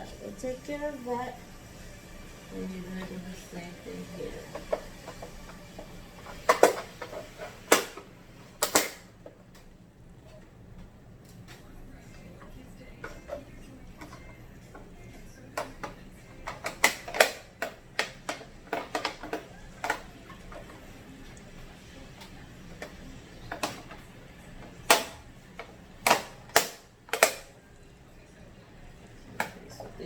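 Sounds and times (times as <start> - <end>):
plastic cover pieces clicking into place: 15.6 - 20.6.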